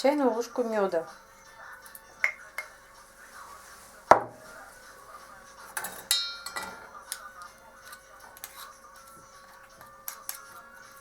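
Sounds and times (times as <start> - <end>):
spoon clinking against pot: 5.8 - 8.7.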